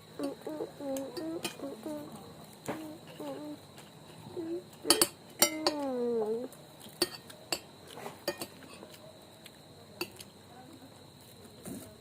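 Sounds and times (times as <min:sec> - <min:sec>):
cutlery clinking on plate: 0:04.8 - 0:05.8, 0:07.0 - 0:08.9.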